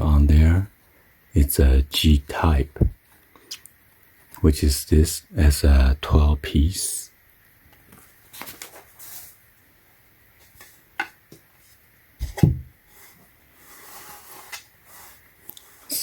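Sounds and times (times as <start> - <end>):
soft rustles: 7.8 - 9.4
dull knock: 12.2 - 12.7.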